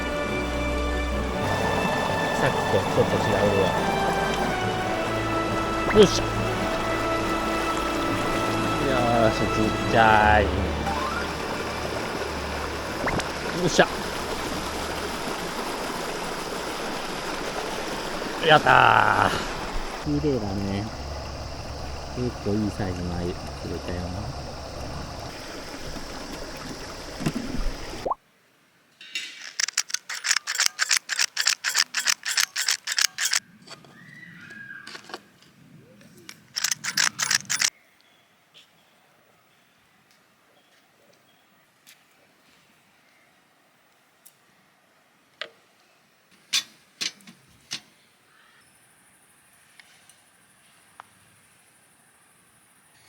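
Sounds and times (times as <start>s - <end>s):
rushing stream water: 0.0s - 28.2s
sharp ratcheting mechanical clicks: 29.4s - 33.4s, 36.6s - 37.7s.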